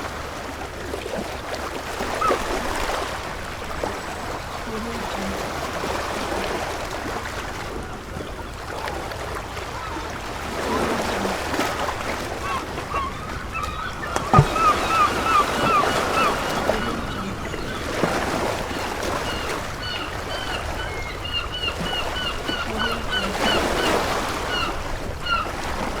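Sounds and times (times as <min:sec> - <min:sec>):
gulls calling: 0:09.7 - 0:26.0.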